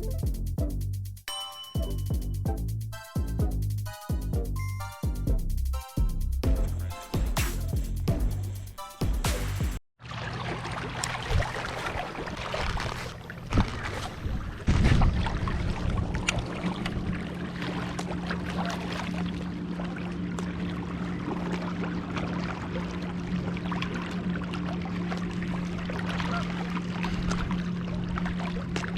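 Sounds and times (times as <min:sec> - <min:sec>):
motorboat engine hum: 0:00.0 - 0:01.0, 0:10.0 - 0:28.9
music: 0:00.0 - 0:09.8
water noise: 0:10.0 - 0:28.9
wind: 0:10.0 - 0:28.9.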